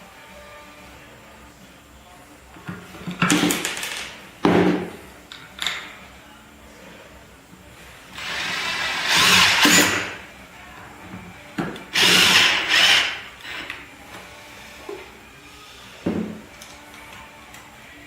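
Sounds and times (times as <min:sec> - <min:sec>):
power drill running: 0:08.2 - 0:10.2, 0:11.9 - 0:13.8.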